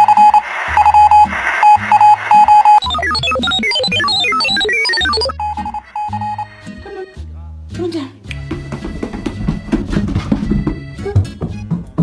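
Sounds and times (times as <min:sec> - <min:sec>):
beeping synth figure over bass: 0:00.0 - 0:06.6
tumbling synth notes: 0:02.8 - 0:06.4.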